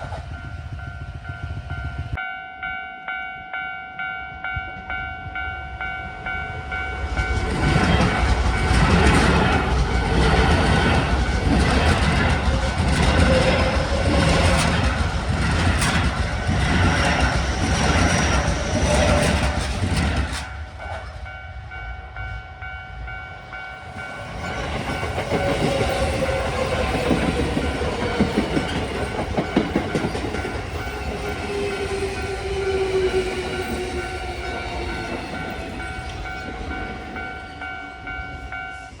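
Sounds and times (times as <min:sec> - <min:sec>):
train wheels clattering: 0:06.0 - 0:21.3, 0:23.8 - 0:38.5
train motor whine: 0:23.9 - 0:38.1.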